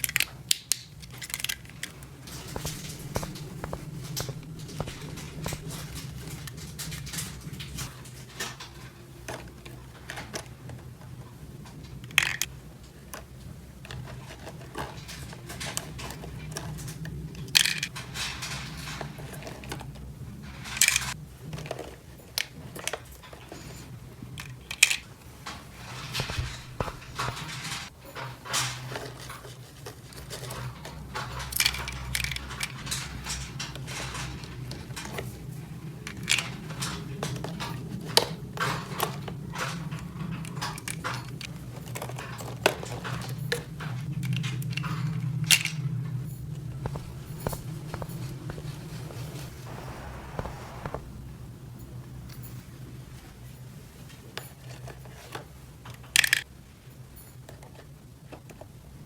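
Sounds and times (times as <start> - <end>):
steady low hum: 2.2 - 7.9, 25.8 - 27.9, 46.3 - 52.4.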